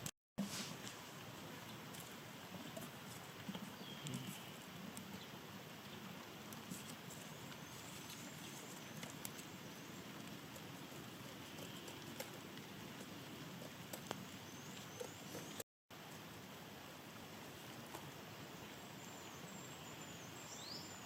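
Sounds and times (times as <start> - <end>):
small birds chirping: 1.6 - 15.6, 18.3 - 21.0.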